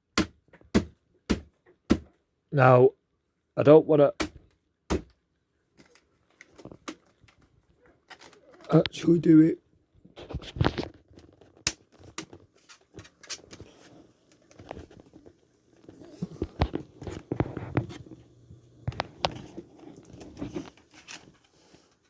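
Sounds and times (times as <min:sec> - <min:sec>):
laptop parts clicking and rattling: 0:05.8 - 0:08.7.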